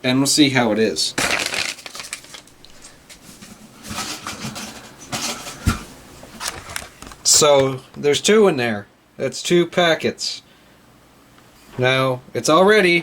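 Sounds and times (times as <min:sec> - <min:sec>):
packets rustling: 0:00.9 - 0:07.3.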